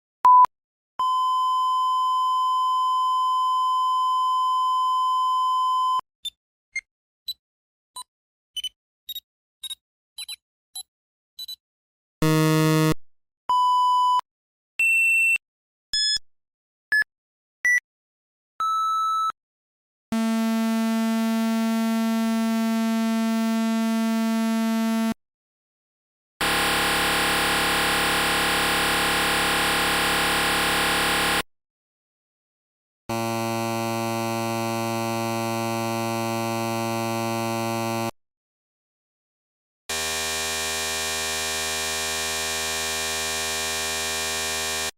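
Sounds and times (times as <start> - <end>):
harsh electronic buzz: 12.2 - 13.0, 20.2 - 25.2, 26.4 - 31.5, 33.1 - 38.2, 39.9 - 44.9
low buzzy electronic beep: 26.4 - 31.4.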